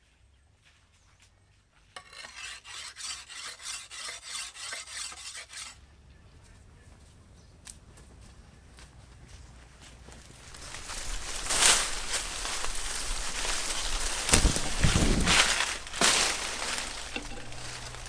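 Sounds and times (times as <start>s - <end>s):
rhythmic scraping strokes: 10.4s - 18.0s.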